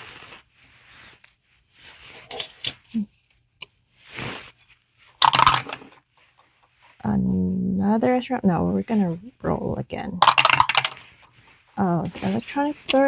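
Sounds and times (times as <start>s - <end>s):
paper cards rustling: 5.1s - 6.7s, 10.2s - 11.4s
die clattering on table: 10.2s - 11.0s.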